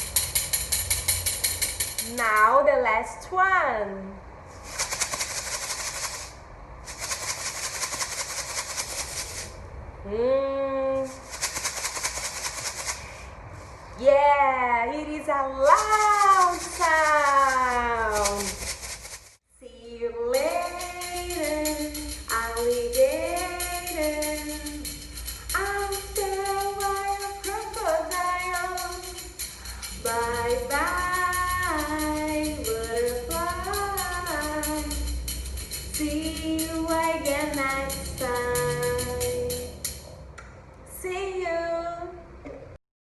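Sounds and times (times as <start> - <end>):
tambourine jingling: 0.0 - 2.6, 20.3 - 40.2
woman singing: 19.6 - 29.3, 30.0 - 35.1, 36.0 - 39.7, 40.9 - 42.2.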